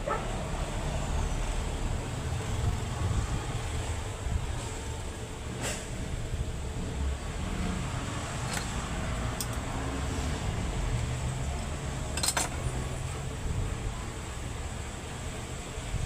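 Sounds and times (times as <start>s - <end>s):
sharp metallic clicks: 8.4s - 9.7s.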